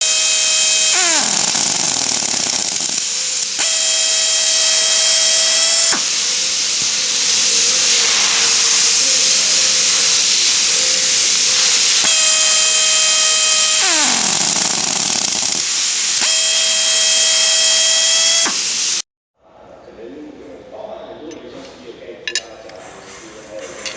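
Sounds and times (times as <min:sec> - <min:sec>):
air motor whining: 0:00.0 - 0:19.0
compressed air hissing: 0:00.0 - 0:19.0.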